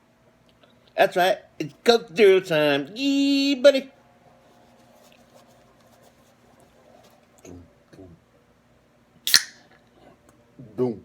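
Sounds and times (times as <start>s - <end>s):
steady low hum: 0.0s - 11.0s
sharp click with hiss: 9.3s - 9.6s.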